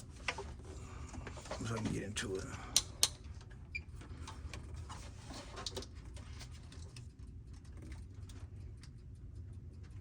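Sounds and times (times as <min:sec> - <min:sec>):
low steady hum: 0:00.0 - 0:10.0
small clicks and rustles of wiring: 0:00.0 - 0:10.0.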